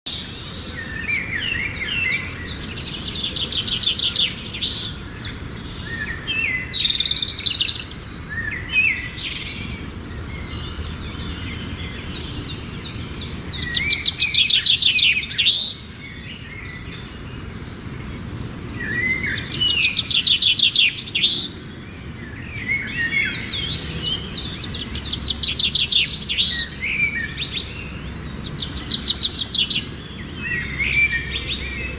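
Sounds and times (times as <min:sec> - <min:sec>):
songbirds chirping: 0:00.1 - 0:31.9.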